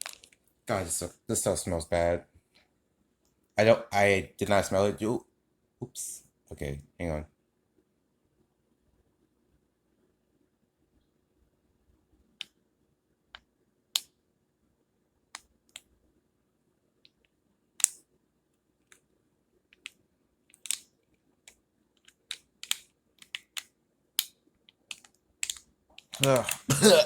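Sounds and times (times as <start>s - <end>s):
plastic parts clicking: 19.8s - 20.9s, 22.0s - 26.7s.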